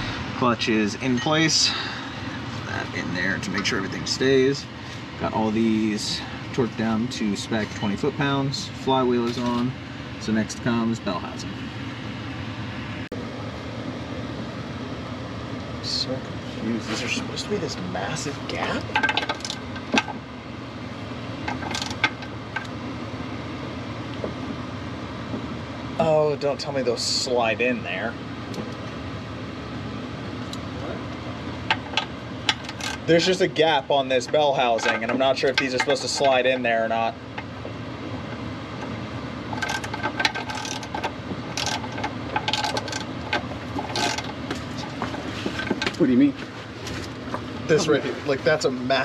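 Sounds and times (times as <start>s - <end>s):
steady background hum: 0.0s - 49.0s
ratchet wrench clicking: 39.6s - 43.1s.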